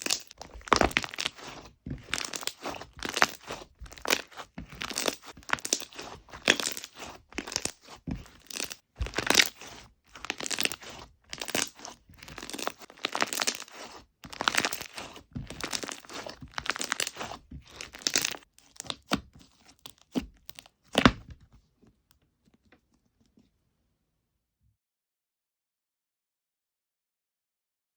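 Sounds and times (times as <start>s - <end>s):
slime squeezed and crackling: 0.0s - 21.2s.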